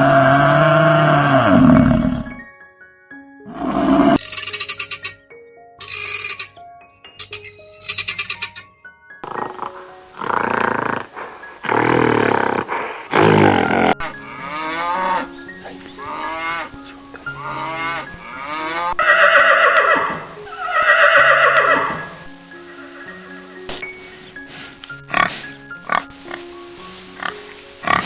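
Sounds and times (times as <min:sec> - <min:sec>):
background music with held notes: 0:00.0 - 0:28.0
farm animal calling: 0:03.5 - 0:05.2, 0:05.8 - 0:11.2, 0:14.0 - 0:22.0.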